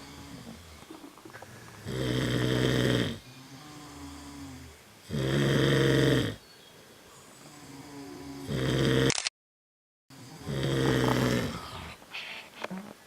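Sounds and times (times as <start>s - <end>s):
loud snores: 0.0s - 0.8s, 1.8s - 6.4s, 7.4s - 9.1s, 10.1s - 12.0s
quiet breath: 0.0s - 1.9s, 10.1s - 12.7s.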